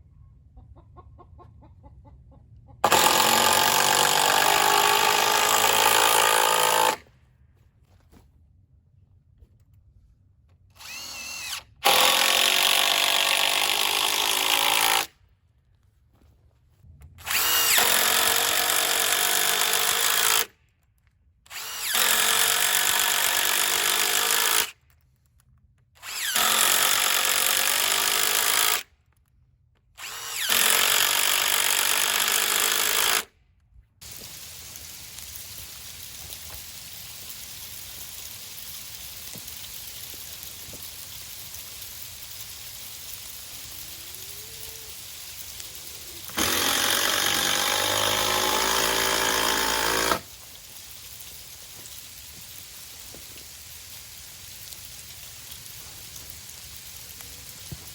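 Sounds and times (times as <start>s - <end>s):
power tool motor whirring: 2.8s - 7.0s, 10.7s - 15.1s, 17.2s - 20.5s, 21.5s - 24.8s, 26.0s - 28.8s, 30.0s - 33.3s, 44.9s - 50.6s.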